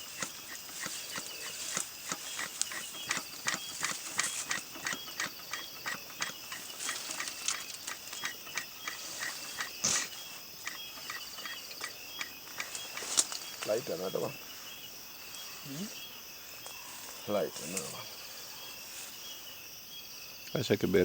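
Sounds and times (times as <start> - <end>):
smoker bellows puffing and clicking: 0.0 - 14.3
faint insect chirring: 0.0 - 21.0.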